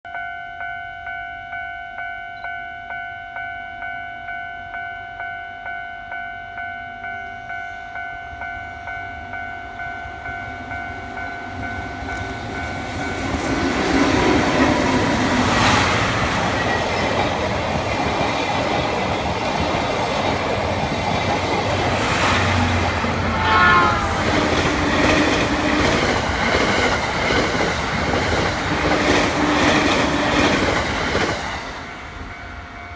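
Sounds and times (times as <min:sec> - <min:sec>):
train wheels clattering over rail joints: 0:12.0 - 0:31.6.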